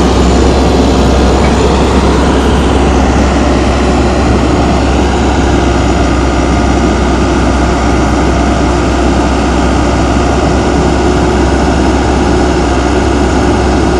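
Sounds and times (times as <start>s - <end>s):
diesel engine deep hum: 0.0s - 13.9s.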